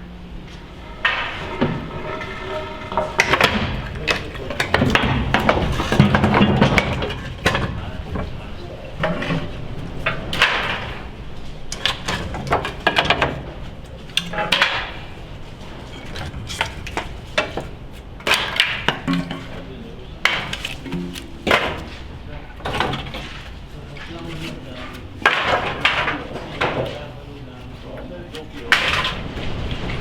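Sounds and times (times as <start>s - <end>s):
metal clanks and knocks: 0.4s - 11.1s.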